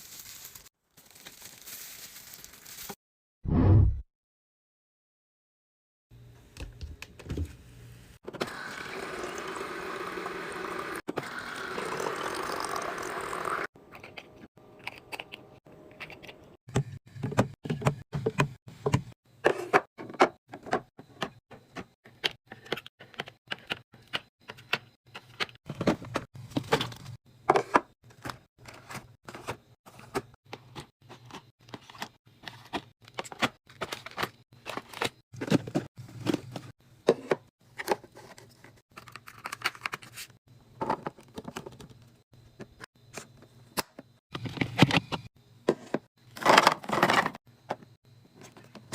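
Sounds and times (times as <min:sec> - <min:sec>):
liquid pouring: 0:08.6 - 0:13.7.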